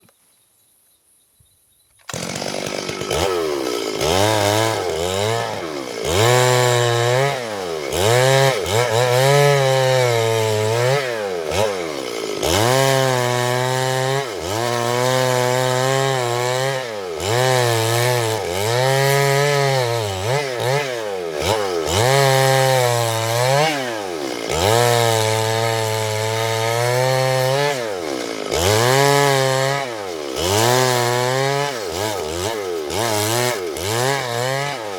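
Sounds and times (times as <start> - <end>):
chainsaw engine revving: 2.0 - 34.9.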